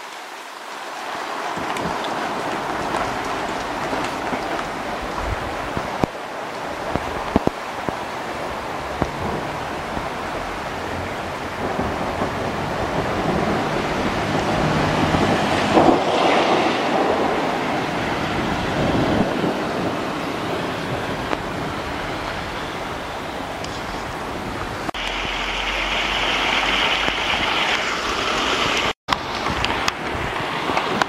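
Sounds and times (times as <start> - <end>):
steady rain: 0.0 - 31.0
thunder rumbling: 1.4 - 31.0.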